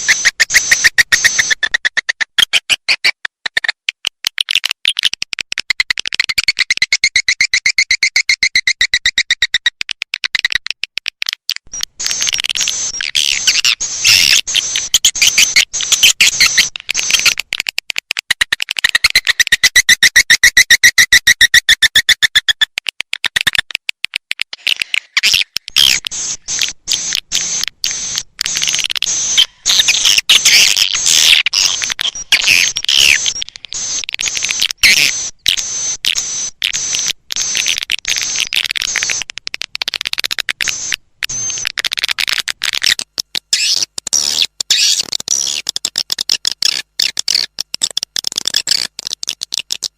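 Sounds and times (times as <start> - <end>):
fast run of clicks: 0.0 - 49.9
swiftlets chirping and twittering: 12.0 - 17.4, 25.2 - 39.2.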